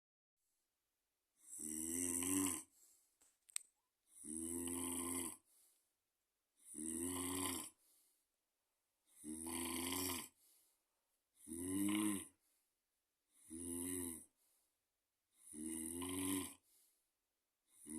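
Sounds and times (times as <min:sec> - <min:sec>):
person snoring: 0:01.4 - 0:02.8, 0:04.1 - 0:05.5, 0:06.6 - 0:07.8, 0:09.0 - 0:10.4, 0:11.4 - 0:12.4, 0:13.3 - 0:14.4, 0:15.3 - 0:16.7, 0:17.7 - 0:17.9.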